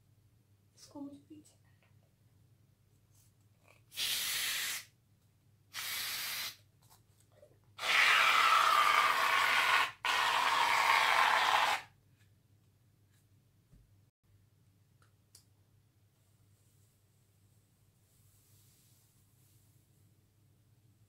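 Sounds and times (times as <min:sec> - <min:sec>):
spray dispenser hissing: 0:04.0 - 0:04.9, 0:05.8 - 0:06.6.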